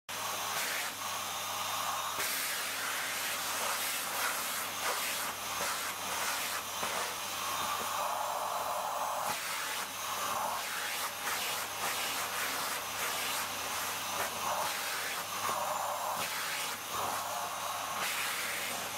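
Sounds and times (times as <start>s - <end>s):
vacuum cleaner running: 0.1s - 18.9s.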